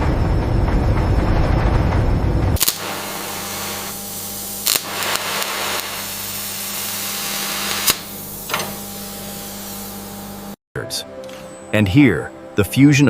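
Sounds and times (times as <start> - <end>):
low hum: 0.0 - 10.6
factory machinery hissing: 2.6 - 10.6.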